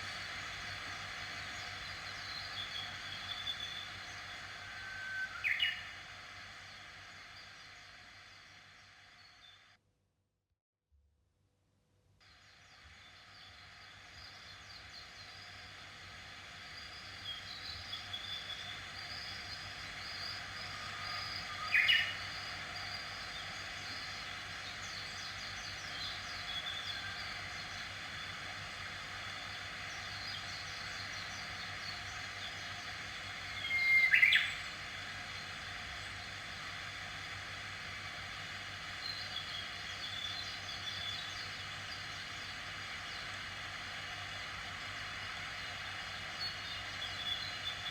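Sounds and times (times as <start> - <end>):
loud bird calls: 0.0 - 6.0, 17.1 - 36.8
steady high background hiss: 0.0 - 9.8, 12.2 - 47.9
birds chirping: 29.4 - 36.6.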